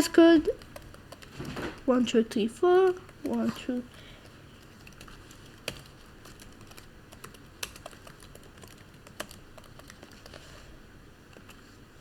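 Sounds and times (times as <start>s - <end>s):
typing on computer keyboard: 0.5s - 1.9s, 4.6s - 10.4s.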